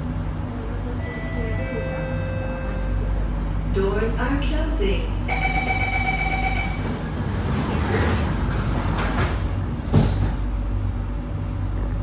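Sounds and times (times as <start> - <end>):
train carriage hum: 0.0 - 12.0
door-closing warning tone: 5.3 - 7.3
train doors thudding shut: 5.8 - 10.6.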